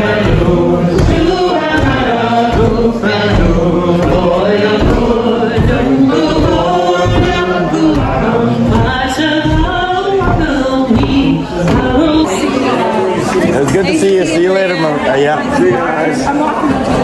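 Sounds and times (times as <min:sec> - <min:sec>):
cloth pounding on table: 0:00.0 - 0:12.2
group chanting in unison: 0:00.0 - 0:17.0.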